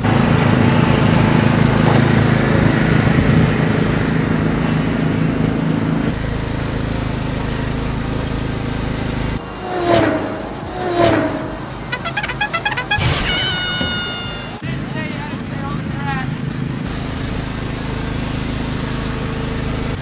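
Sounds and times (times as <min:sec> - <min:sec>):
riding lawn mower engine running: 0:00.0 - 0:20.0
short falling tones: 0:09.4 - 0:14.6.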